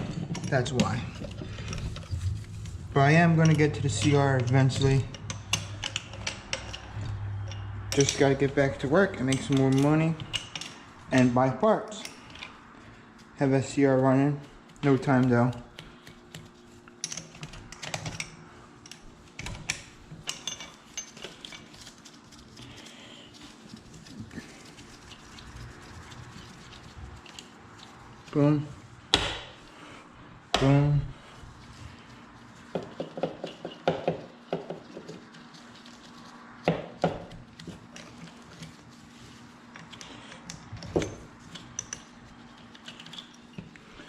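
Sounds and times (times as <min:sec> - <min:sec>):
hand tools clicking on metal: 0:03.3 - 0:12.6, 0:14.6 - 0:21.8.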